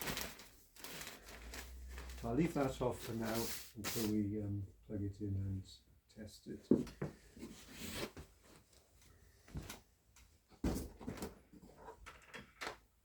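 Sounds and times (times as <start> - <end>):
rustling: 0.0 - 4.2.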